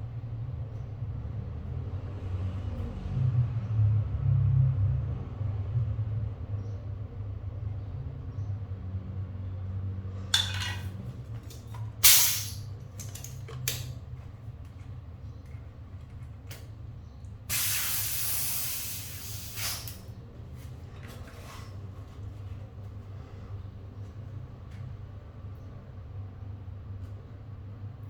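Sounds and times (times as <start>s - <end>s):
air hissing in bursts: 12.0s - 12.7s, 17.5s - 20.1s.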